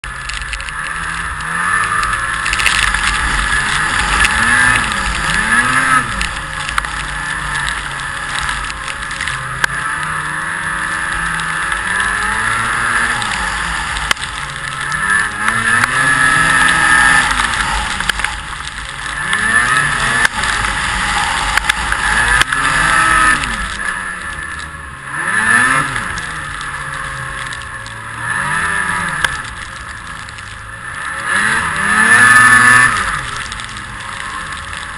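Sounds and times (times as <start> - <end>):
snowmobile engine revving: 0.1 - 34.9.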